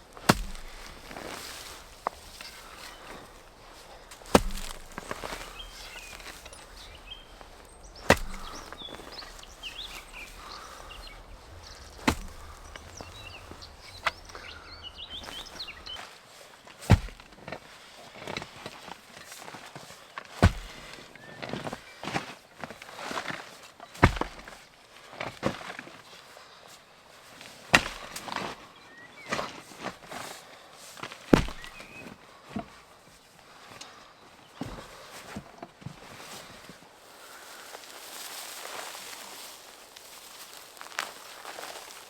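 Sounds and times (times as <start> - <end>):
small birds chirping: 0.0 - 16.1, 31.4 - 32.2
garden hand tool knocking: 0.2 - 3.5, 4.1 - 15.8, 31.4 - 31.9.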